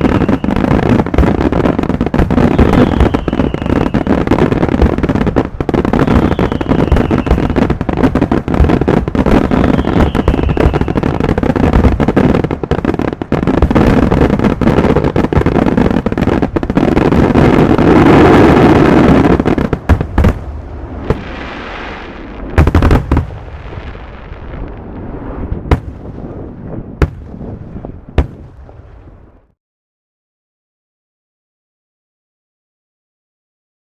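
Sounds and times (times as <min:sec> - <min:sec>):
firework whistles: 0:00.0 - 0:00.8, 0:02.2 - 0:04.6, 0:05.7 - 0:12.1, 0:17.0 - 0:28.2
fireworks bangs and crackling: 0:00.0 - 0:29.6.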